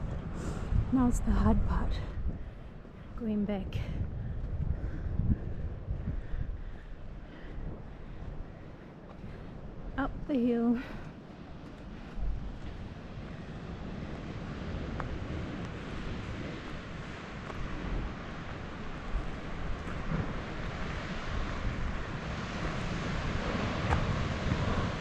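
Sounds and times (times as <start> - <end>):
wind gusts on microphone: 0.0 - 25.0
sea surf rushing: 12.7 - 25.0.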